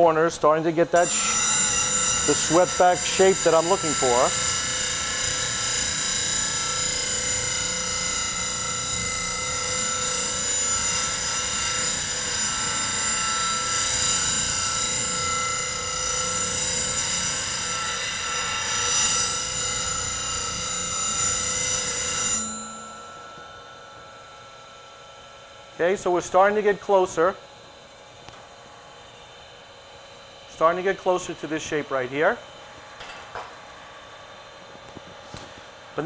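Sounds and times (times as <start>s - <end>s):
bench grinder motor whine: 0.0s - 26.0s
metal grinding on grinding wheel: 0.8s - 24.8s.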